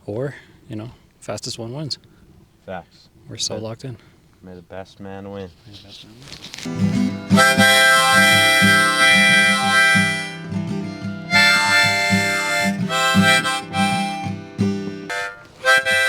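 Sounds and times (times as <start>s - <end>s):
harmonica chords: 6.7s - 16.0s
strummed acoustic guitar: 6.7s - 16.0s.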